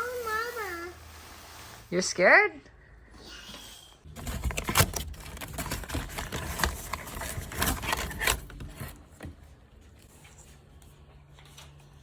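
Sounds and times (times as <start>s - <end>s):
cardboard scraping and rubbing: 4.2s - 9.1s.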